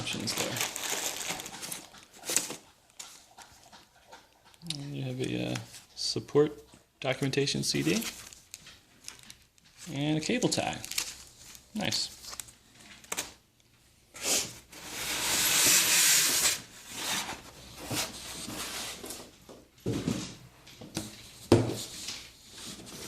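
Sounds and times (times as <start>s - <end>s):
cardboard box rustling and sliding: 14.7s - 19.2s.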